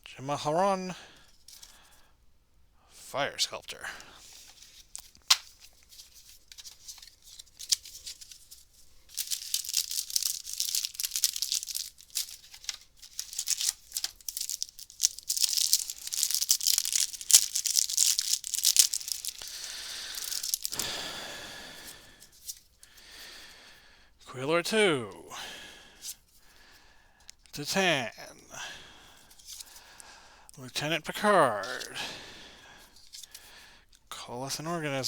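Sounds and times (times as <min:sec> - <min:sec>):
wrapper tearing and crinkling: 0:04.8 - 0:20.9.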